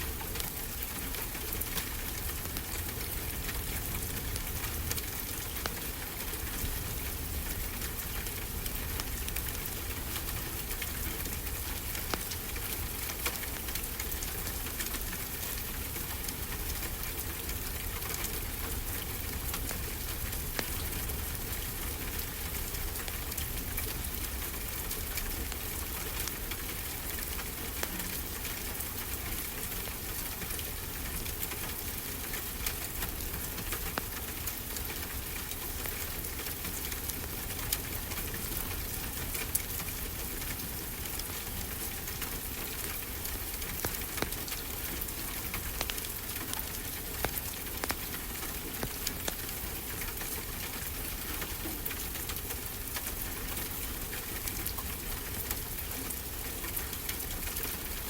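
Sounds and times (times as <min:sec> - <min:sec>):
fireplace crackling and popping: 0:30.2 - 0:54.1.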